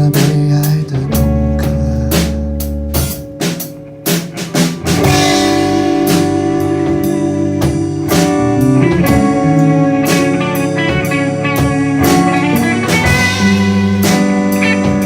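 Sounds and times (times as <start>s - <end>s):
rock band playing: 0.0s - 15.0s.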